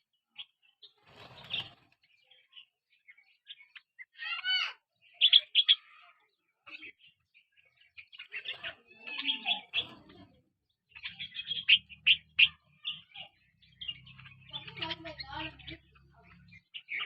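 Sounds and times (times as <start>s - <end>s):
small birds chirping: 0.0s - 17.0s.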